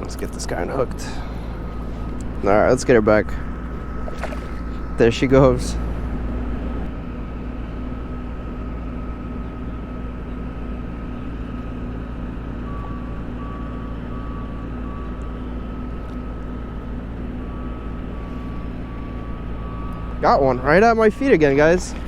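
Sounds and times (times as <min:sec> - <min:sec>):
low engine drone: 0:00.0 - 0:22.0
beeping tone: 0:12.5 - 0:16.4.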